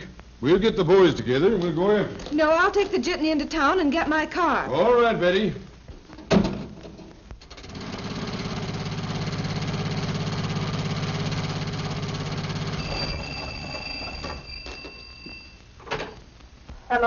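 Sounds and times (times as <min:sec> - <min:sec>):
faint steady high tones: 0:12.5 - 0:16.2.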